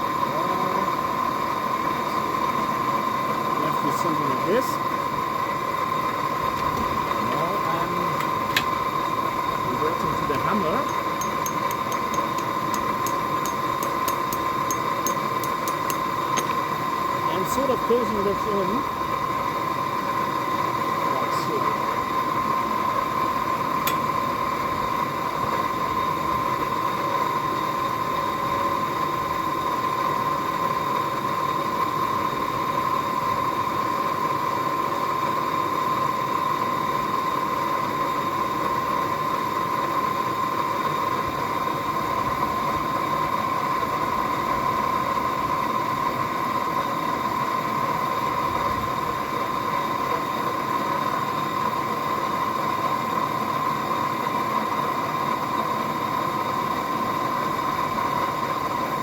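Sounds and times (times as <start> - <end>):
forge rushing with whine: 0.0 - 22.6.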